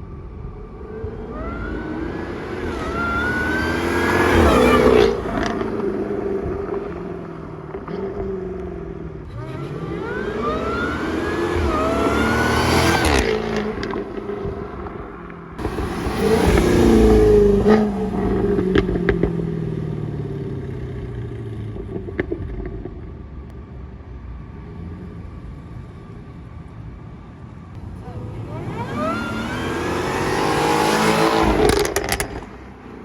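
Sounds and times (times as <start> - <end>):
car engine revving with supercharger whine: 0.0 - 23.4, 27.8 - 33.0
exhaust pops and crackles: 4.3 - 9.5, 13.0 - 23.6, 31.4 - 33.0.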